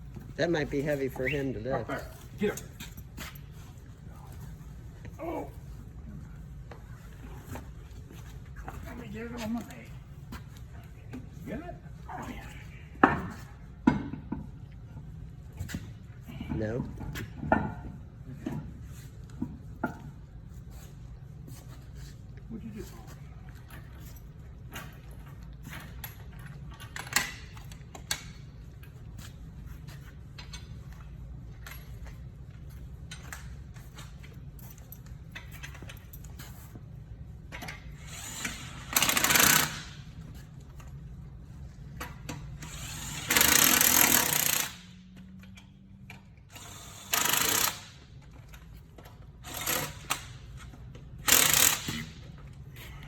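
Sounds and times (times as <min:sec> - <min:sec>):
power tool bursts: 0:38.0 - 0:40.0, 0:42.6 - 0:44.9, 0:46.5 - 0:48.0, 0:49.4 - 0:50.3, 0:51.2 - 0:52.2.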